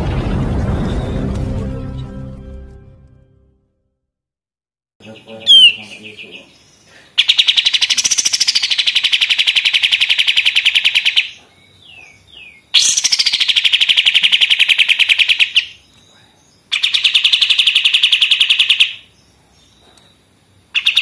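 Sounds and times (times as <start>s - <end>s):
bird downward-slurred notes: 5.0s - 6.4s
songbird rattling trill: 5.1s - 6.4s, 7.2s - 15.8s, 16.7s - 19.1s, 19.7s - 21.0s.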